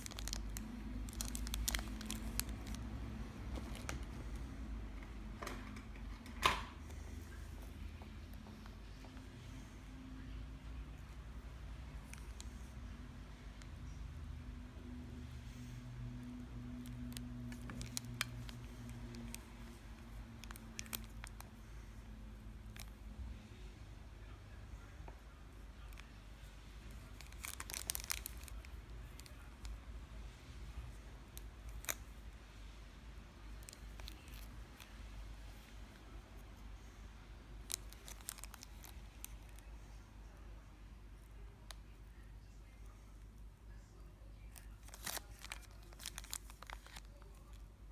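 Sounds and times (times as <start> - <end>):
plastic wrapper crinkling: 0.0 - 4.4, 16.6 - 21.6, 26.9 - 29.8, 31.0 - 32.2, 33.5 - 36.1, 37.6 - 39.7, 44.6 - 47.8
low steady hum: 0.0 - 47.9.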